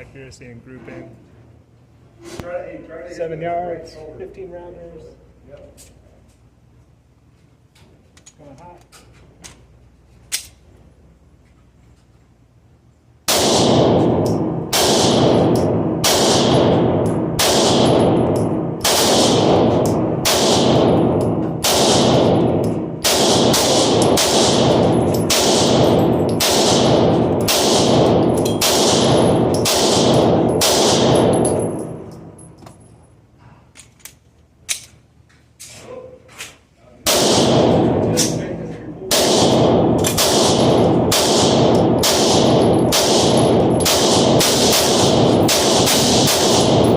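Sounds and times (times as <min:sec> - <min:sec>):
pistol shots with ringing tail: 0:13.2 - 0:32.5, 0:37.1 - 0:46.9.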